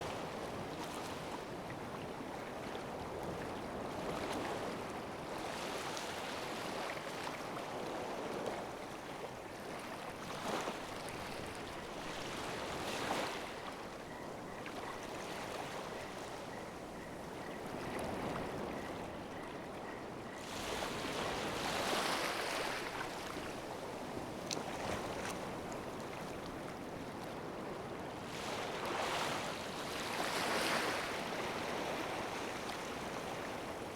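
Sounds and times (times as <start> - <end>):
ocean waves breaking: 14.8 - 26.3.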